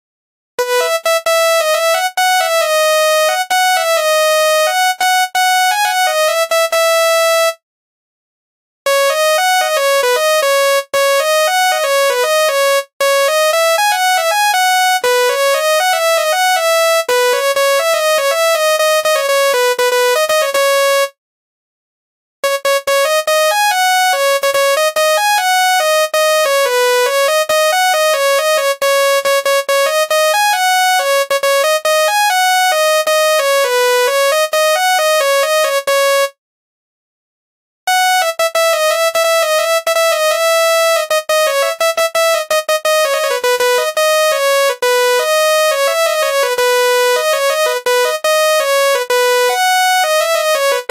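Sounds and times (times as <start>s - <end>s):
multi-tone bus horn melody: 37.9s - 50.9s.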